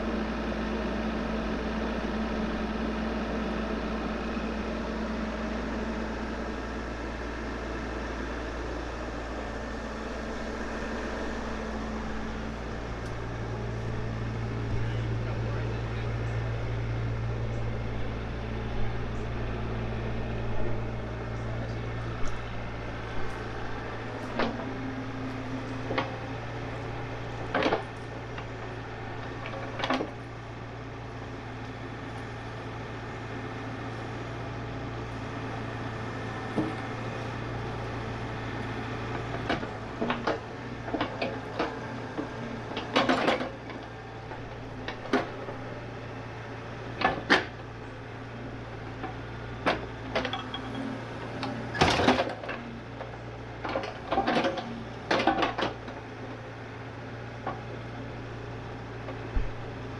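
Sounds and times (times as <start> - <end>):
excavator engine droning: 0.0 - 59.9
machine knocks and clunks: 27.5 - 27.9, 51.7 - 52.6, 59.3 - 59.7.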